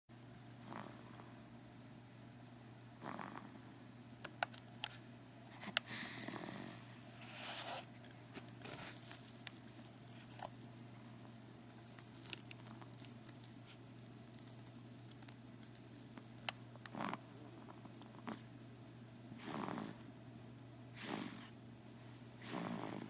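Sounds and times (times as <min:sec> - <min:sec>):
steady low hum: 0:00.1 - 0:23.0
person breathing: 0:05.8 - 0:07.4
faint clicks and rustles: 0:08.0 - 0:16.9.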